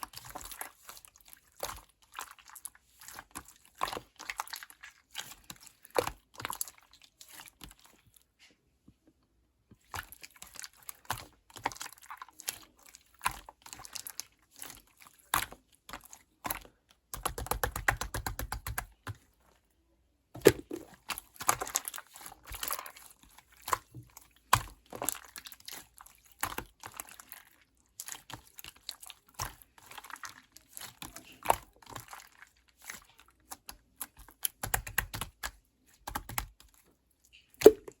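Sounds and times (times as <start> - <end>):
slime squished by hand: 20.4 - 38.0
air-bubble pops: 37.6 - 38.0.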